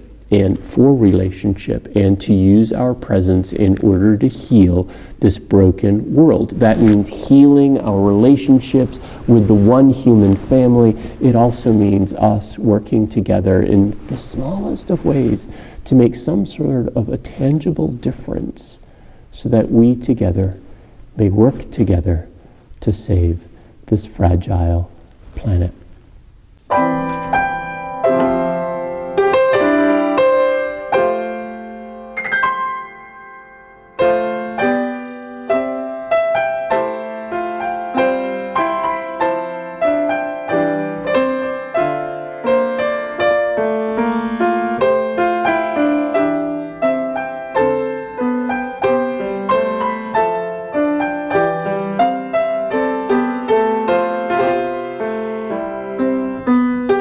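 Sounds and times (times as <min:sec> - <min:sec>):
slow solo piano piece: 0:26.7 - 0:57.0.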